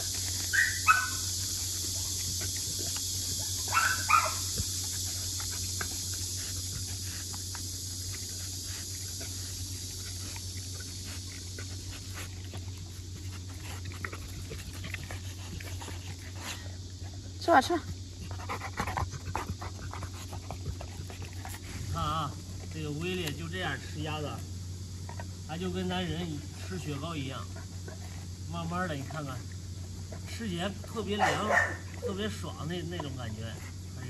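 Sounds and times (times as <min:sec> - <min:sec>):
dog whine: 0:00.0 - 0:01.3
dog chewing frozen meat: 0:00.0 - 0:17.4, 0:18.0 - 0:23.5.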